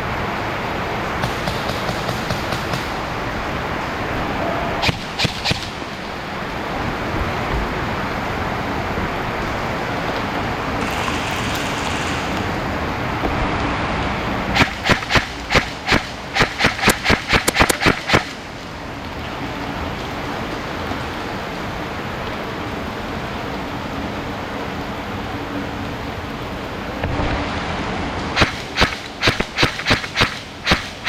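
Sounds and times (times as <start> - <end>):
steady rushing noise: 0.0 - 31.0
airsoft gun shots: 1.2 - 3.0, 4.8 - 5.8, 14.6 - 18.4, 28.4 - 31.0.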